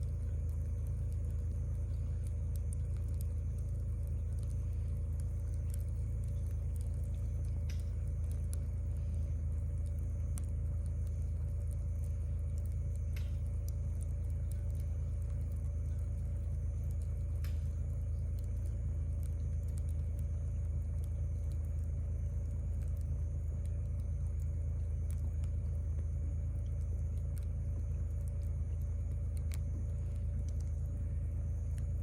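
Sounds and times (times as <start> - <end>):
campfire crackling and popping: 0.0 - 32.0
low rumble: 0.0 - 32.0.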